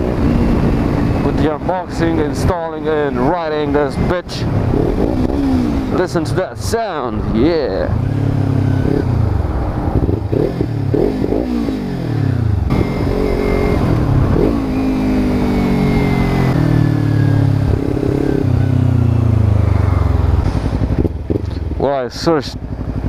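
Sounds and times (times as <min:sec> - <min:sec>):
motorcycle engine revving: 0:00.0 - 0:23.0.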